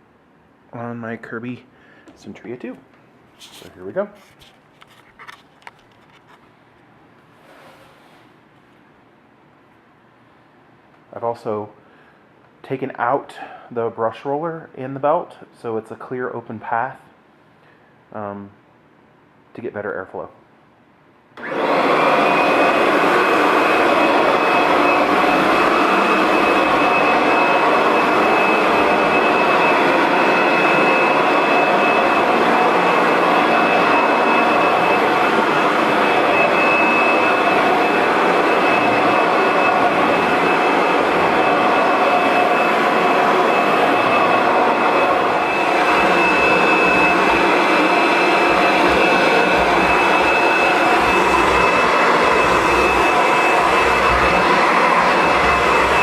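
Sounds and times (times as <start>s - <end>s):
vacuum cleaner running: 21.4s - 56.0s.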